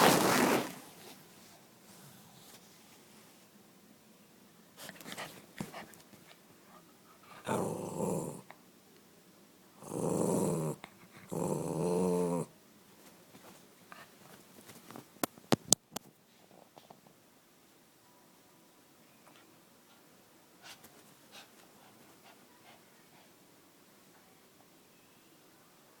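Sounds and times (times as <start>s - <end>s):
dog growling: 7.2s - 8.6s, 9.8s - 12.5s.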